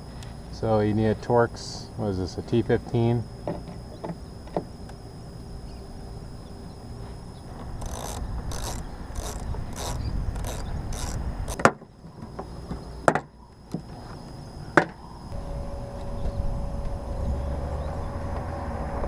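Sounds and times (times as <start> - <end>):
ratchet driver rasping: 7.8 - 11.7
sharp clicks: 7.8 - 11.7.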